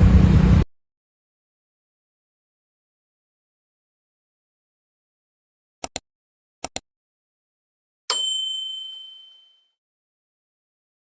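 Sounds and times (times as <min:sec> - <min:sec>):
quick clicks: 0:05.8 - 0:06.0, 0:06.6 - 0:06.8
bright bell ding: 0:08.1 - 0:09.8.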